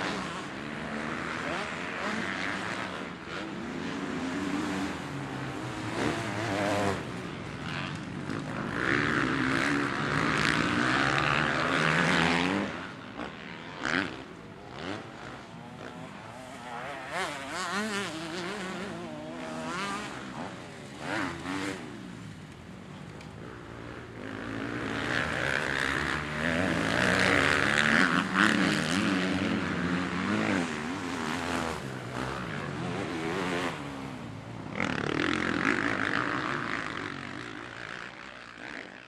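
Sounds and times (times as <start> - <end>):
dirt bike engines revving: 0.0 - 39.0.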